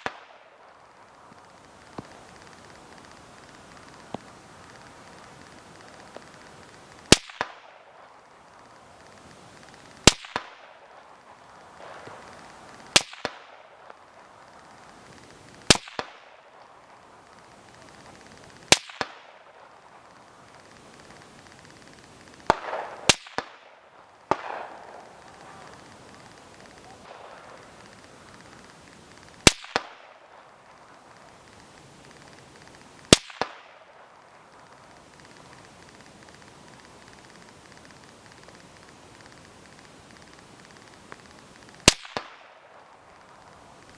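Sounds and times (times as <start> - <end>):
quieter echoing crack: 0.0 - 43.9
rifle shots: 7.1 - 8.2, 9.0 - 21.0, 22.4 - 28.6, 29.4 - 31.3, 33.1 - 34.7, 41.8 - 43.3.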